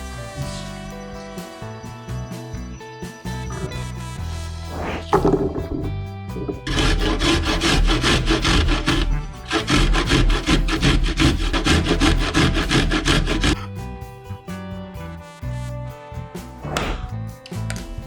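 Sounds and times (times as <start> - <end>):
cheese grating on metal grater: 6.6 - 13.6.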